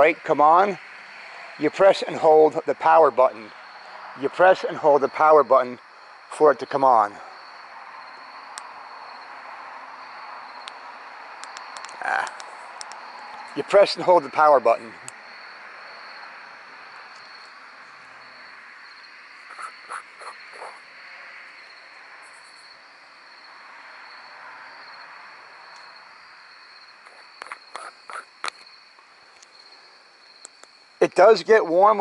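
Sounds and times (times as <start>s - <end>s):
crickets trilling: 0.0s - 32.0s
soft insect hiss: 15.1s - 31.2s.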